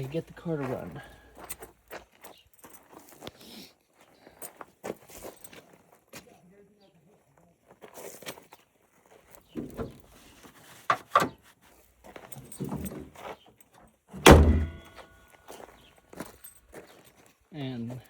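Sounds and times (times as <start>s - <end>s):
knocks and clunks of handling: 9.5s - 10.2s, 10.9s - 11.4s, 12.2s - 13.2s, 14.2s - 15.1s
heavy metallic bang ringing: 14.3s - 15.0s.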